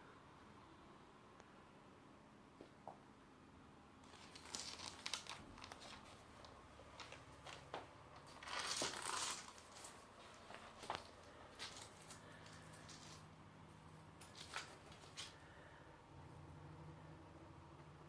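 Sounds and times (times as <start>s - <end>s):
crinkling and rustling: 4.0s - 15.6s.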